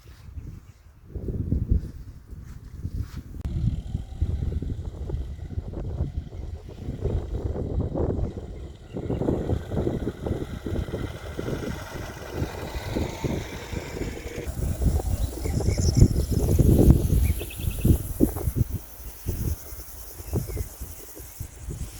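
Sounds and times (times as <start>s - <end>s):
low rumbling and thumping: 3.4s - 17.4s
insects trilling: 3.5s - 21.9s.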